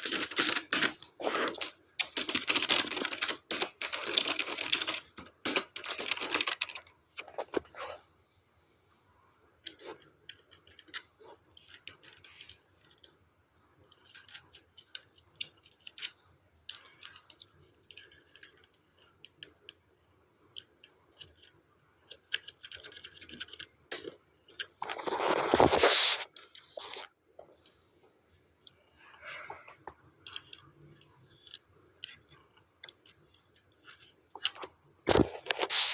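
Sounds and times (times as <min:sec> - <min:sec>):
computer keyboard clicking: 0:00.0 - 0:06.9, 0:13.9 - 0:19.8, 0:22.1 - 0:24.7.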